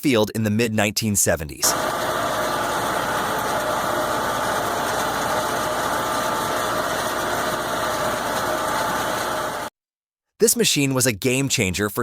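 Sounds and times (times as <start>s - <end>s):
tractor engine running: 1.7s - 9.7s.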